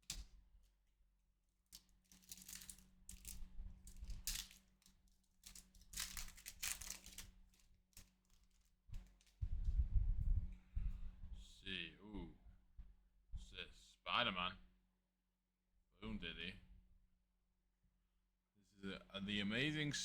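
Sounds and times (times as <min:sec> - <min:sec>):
foil wrapper tearing and crinkling: 0:00.0 - 0:00.3, 0:01.6 - 0:09.4.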